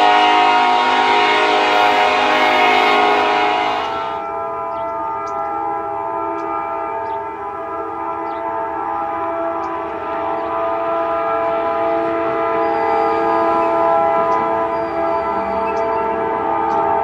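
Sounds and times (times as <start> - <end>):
locomotive air horn blast: 0.0 - 4.2.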